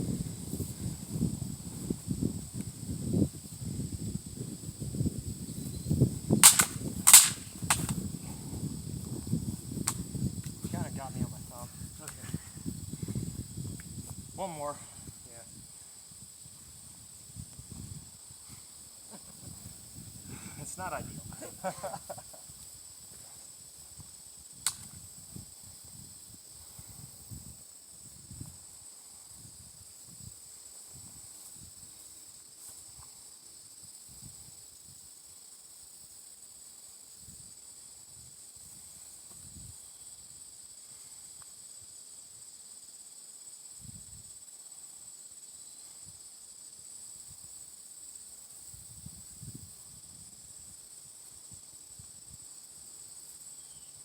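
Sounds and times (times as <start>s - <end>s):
wind rumble on microphone: 0.0s - 32.0s, 34.1s - 35.0s, 37.2s - 40.4s, 43.8s - 44.4s, 48.7s - 50.8s
high-pitched insect trill: 0.0s - 54.0s
sharp click: 6.4s - 8.0s, 24.6s - 24.9s.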